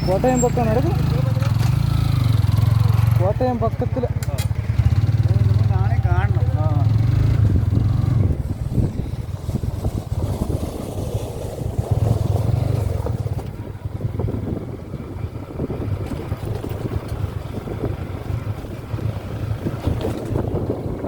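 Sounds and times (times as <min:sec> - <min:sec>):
off-road vehicle engine drone: 0:00.0 - 0:21.0
wind noise on microphone: 0:06.5 - 0:21.0.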